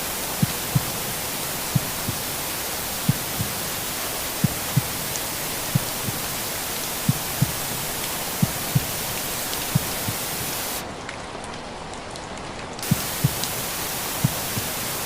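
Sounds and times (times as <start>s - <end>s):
rain hiss: 0.0s - 15.0s
heartbeat thumps: 0.2s - 2.3s, 3.0s - 3.6s, 4.4s - 6.4s, 7.0s - 10.5s, 12.8s - 14.9s.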